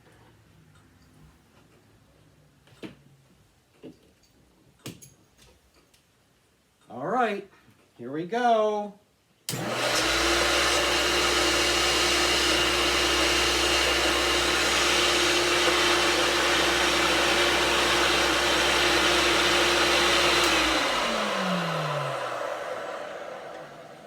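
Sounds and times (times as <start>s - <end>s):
motor winding down: 9.5s - 24.0s
vacuum cleaner motor running: 9.5s - 24.0s.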